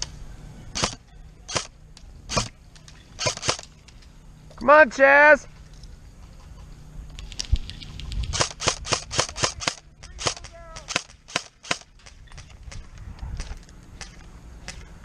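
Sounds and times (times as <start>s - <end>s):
airsoft guns firing sharp pops: 8.3s - 14.9s.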